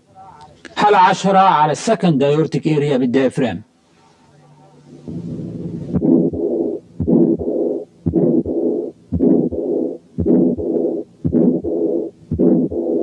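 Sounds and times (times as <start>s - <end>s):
heart murmur: 5.9s - 13.0s
heartbeat through stethoscope: 5.9s - 13.0s.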